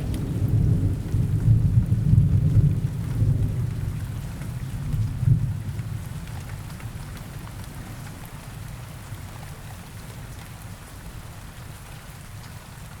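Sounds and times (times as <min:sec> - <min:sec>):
thunder rumble: 0:00.0 - 0:04.2
heavy rain falling: 0:00.0 - 0:13.0.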